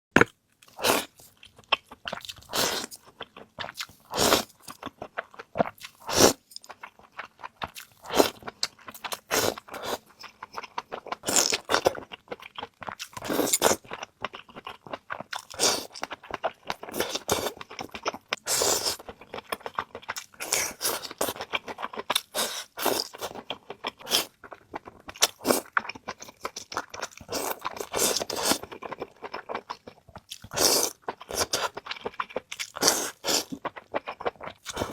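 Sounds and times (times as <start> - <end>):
crunching crisp food: 0.2 - 34.9.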